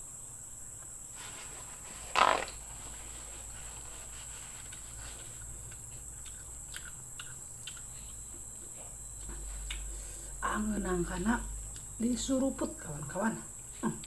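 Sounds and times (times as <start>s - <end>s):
crickets chirring: 0.0s - 14.0s
crisp chewing clicks: 4.6s - 8.5s.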